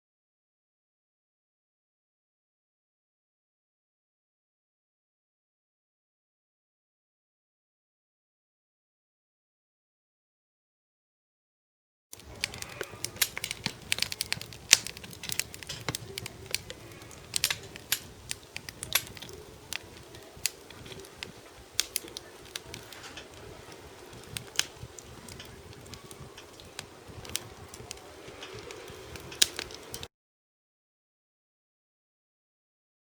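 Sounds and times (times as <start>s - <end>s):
campfire crackling: 12.1s - 30.1s.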